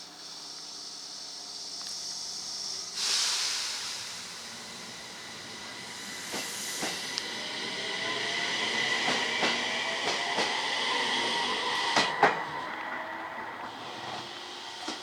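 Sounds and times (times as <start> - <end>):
train whine and hiss: 0.0 - 15.0
train wheels clacking over rail joints: 8.8 - 12.8.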